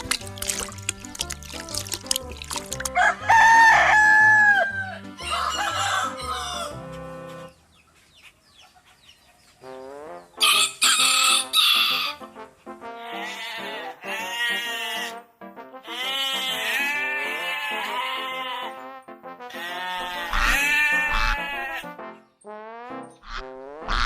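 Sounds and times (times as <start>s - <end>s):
background music: 0.0s - 7.6s, 9.6s - 24.0s
rooster crowing: 3.0s - 6.9s, 10.4s - 12.2s.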